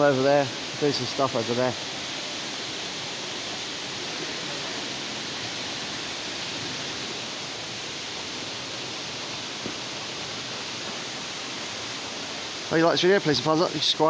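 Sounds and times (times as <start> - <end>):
indoor waterfall rushing: 0.0 - 14.0.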